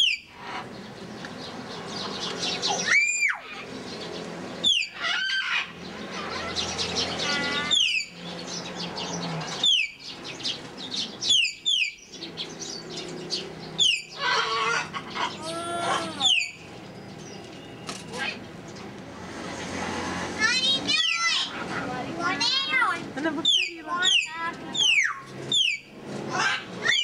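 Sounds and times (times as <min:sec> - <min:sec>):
bird warbling calls: 0:00.0 - 0:18.9, 0:20.4 - 0:27.0
bird whistling: 0:04.6 - 0:08.2, 0:11.2 - 0:12.1, 0:16.1 - 0:16.7, 0:23.4 - 0:25.9.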